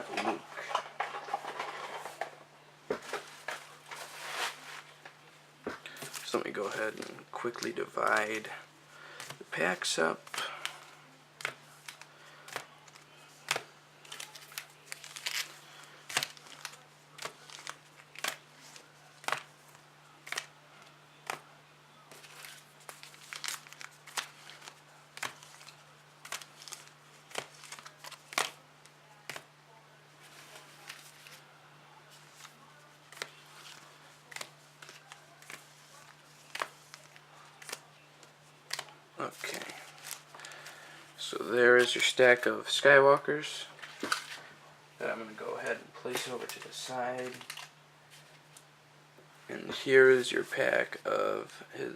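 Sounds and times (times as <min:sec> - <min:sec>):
foil wrappers crinkling: 0:11.4 - 0:21.4, 0:22.1 - 0:28.6, 0:32.2 - 0:41.0, 0:46.1 - 0:47.7.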